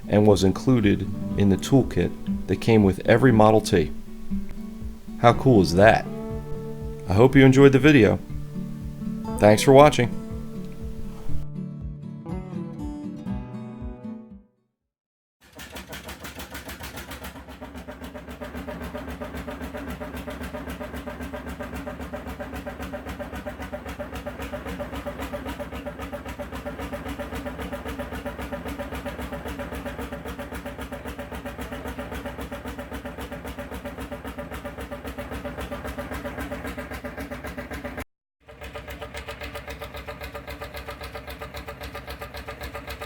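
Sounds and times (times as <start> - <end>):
engine idling: 0.0 - 11.5, 15.4 - 43.0.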